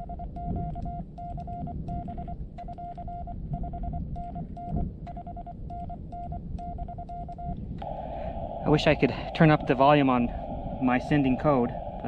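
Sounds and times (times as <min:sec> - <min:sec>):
morse code beeps: 0:00.0 - 0:07.6
low rumble: 0:07.8 - 0:12.0.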